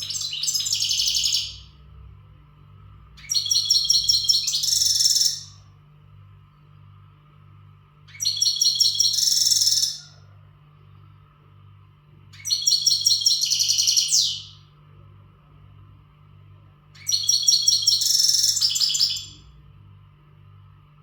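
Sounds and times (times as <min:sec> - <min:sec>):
goldfinch twittering song: 0:00.0 - 0:01.7, 0:03.2 - 0:05.6, 0:08.1 - 0:10.0, 0:12.4 - 0:14.6, 0:17.0 - 0:19.4.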